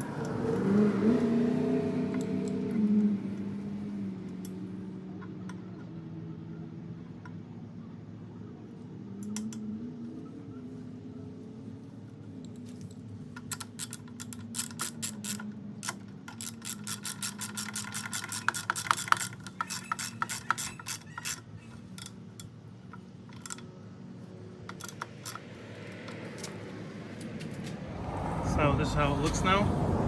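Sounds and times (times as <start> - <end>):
rapid ratcheting clicks: 12.4 - 23.8, 24.6 - 26.6.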